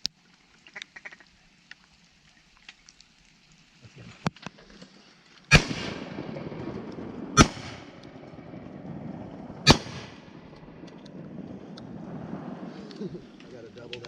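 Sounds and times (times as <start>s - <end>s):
shotgun shots: 5.5s - 8.7s, 9.6s - 10.9s.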